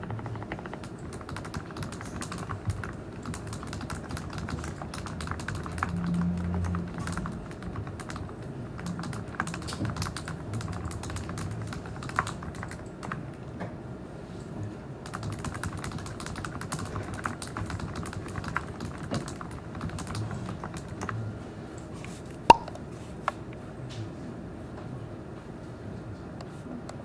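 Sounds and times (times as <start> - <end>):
typing on computer keyboard: 0.0 - 13.2, 15.0 - 21.1.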